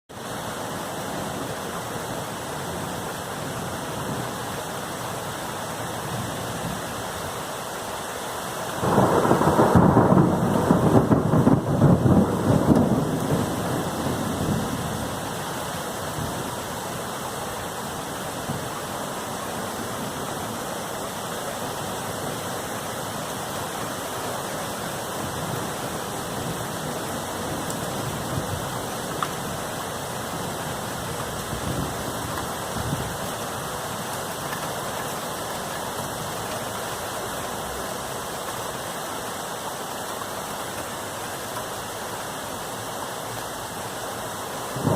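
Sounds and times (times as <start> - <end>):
steady rain: 0.1 - 44.9
thunderclap rumbling: 8.8 - 15.1.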